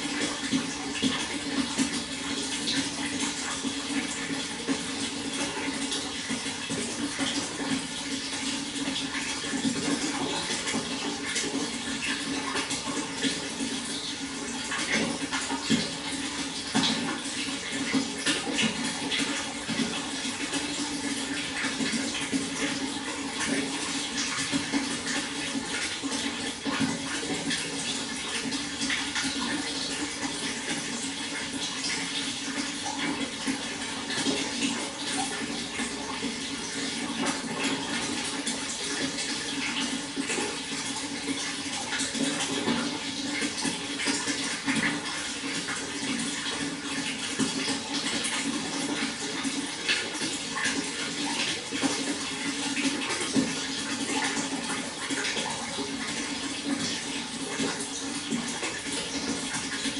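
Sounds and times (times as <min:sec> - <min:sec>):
water flowing and splashing: 0:00.0 - 0:59.9.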